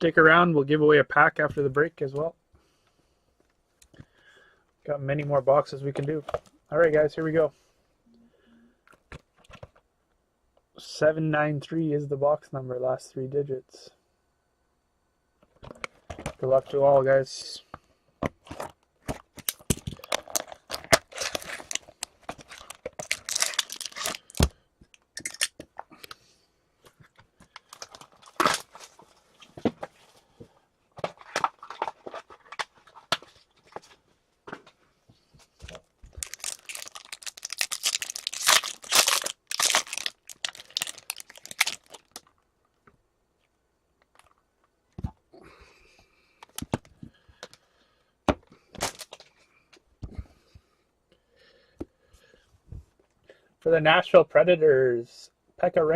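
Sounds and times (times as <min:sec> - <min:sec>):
plastic and foil wrapping tearing: 0:19.4 - 0:24.5, 0:36.2 - 0:42.3.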